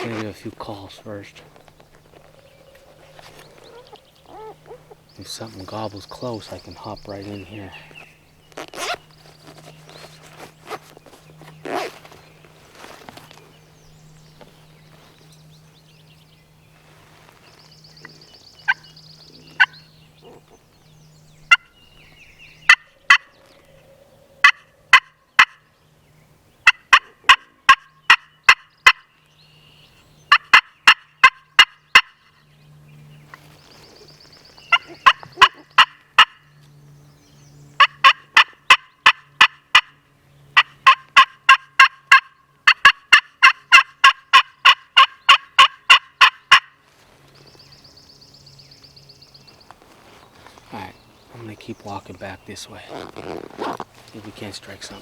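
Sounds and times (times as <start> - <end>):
turkey call yelps: 2.3 - 5.1, 18.7 - 20.6, 21.5 - 21.8, 24.4 - 25.6, 26.6 - 29.1, 30.3 - 32.3, 34.7 - 36.4, 37.8 - 40.0, 40.6 - 46.8.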